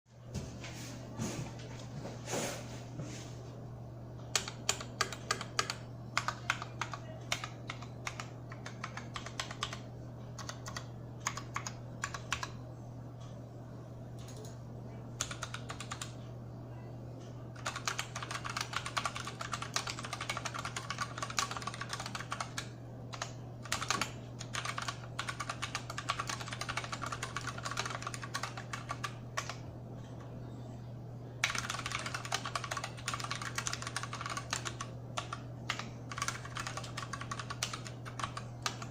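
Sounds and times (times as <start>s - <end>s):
steady low hum: 0.1s - 38.9s
mechanical keyboard typing: 4.3s - 12.6s, 14.2s - 14.6s, 15.2s - 16.2s, 17.6s - 29.6s, 31.4s - 38.9s.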